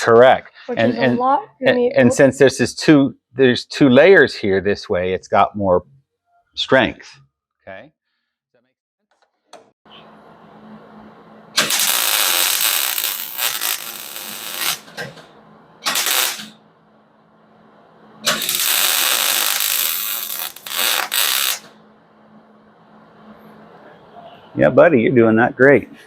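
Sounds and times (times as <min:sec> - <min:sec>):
faint steady hum: 0:00.0 - 0:05.0
welder arc crackling: 0:11.6 - 0:16.6, 0:18.2 - 0:21.8.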